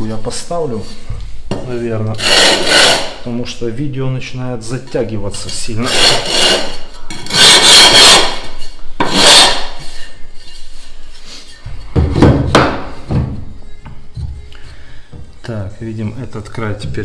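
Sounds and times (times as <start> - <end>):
stone tile edge scraping: 2.1 - 3.2, 5.4 - 12.0.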